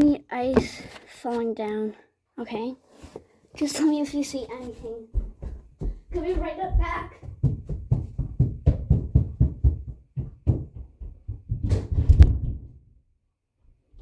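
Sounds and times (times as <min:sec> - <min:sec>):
rapid dull knocks: 0:05.1 - 0:12.7.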